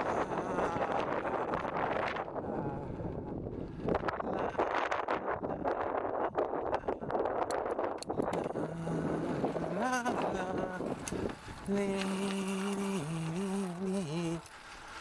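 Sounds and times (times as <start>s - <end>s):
man humming: 0.0s - 3.5s, 4.1s - 6.0s, 8.1s - 14.6s
wind on microphone: 0.0s - 15.0s.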